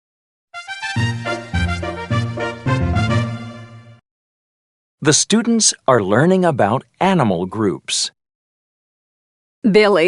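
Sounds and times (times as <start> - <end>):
upbeat intro jingle: 0.6 - 4.0.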